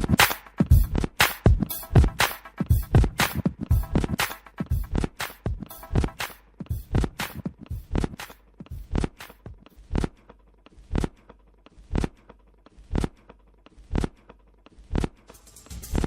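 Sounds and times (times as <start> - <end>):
percussive hits: 0.0 - 9.7, 15.3 - 16.0
drum beat: 0.0 - 9.8, 15.3 - 16.0.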